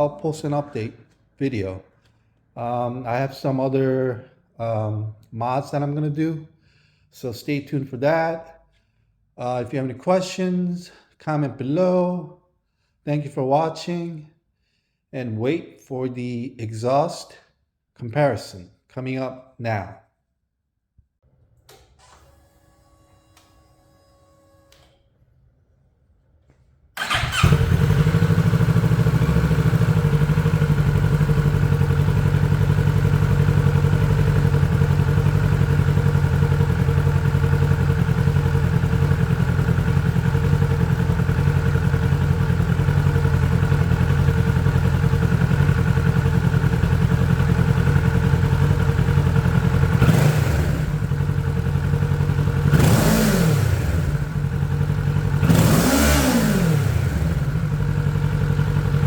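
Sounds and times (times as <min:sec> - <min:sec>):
motorcycle engine idling: 0:27.0 - 0:59.0
motorcycle engine revving: 0:27.0 - 0:59.0.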